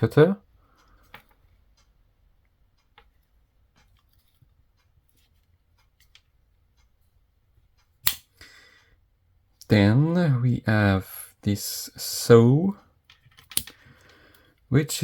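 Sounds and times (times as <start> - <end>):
knife blade snapping: 8.0 - 8.2.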